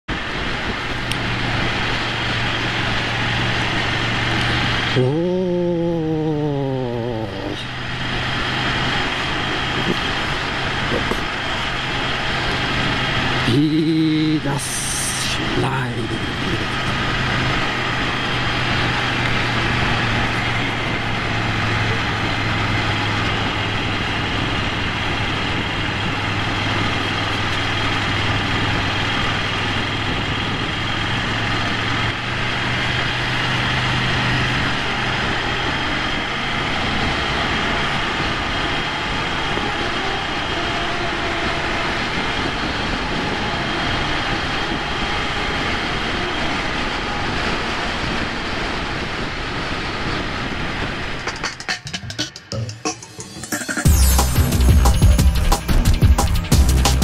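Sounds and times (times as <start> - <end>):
wind noise on microphone: 0.1 - 51.5
motorcycle engine running: 0.2 - 15.4, 16.0 - 42.5, 50.1 - 57.0.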